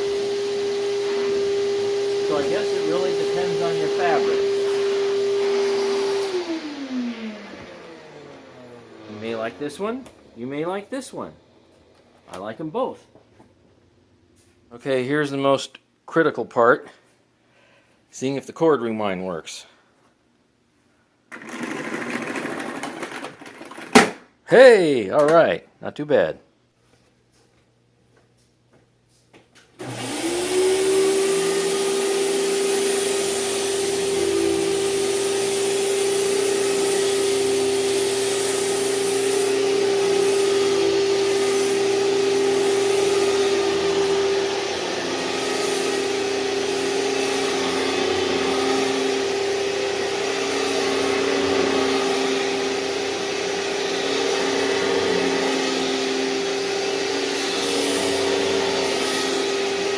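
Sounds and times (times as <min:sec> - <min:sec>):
vacuum cleaner motor whine: 0:00.0 - 0:12.2, 0:21.3 - 0:23.9, 0:29.8 - 0:59.9.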